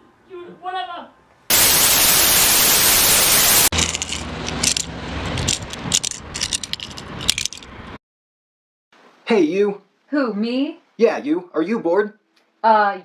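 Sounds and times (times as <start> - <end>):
loud static hiss: 1.5 - 3.7.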